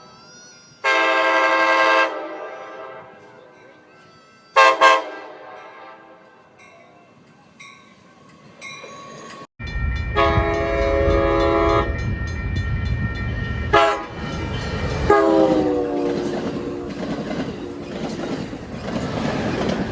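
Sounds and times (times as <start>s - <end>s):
train air horn chord: 0.8s - 3.5s, 4.6s - 6.3s, 10.1s - 12.0s, 13.7s - 14.1s, 15.1s - 17.0s
train rumble and clatter: 6.2s - 19.9s.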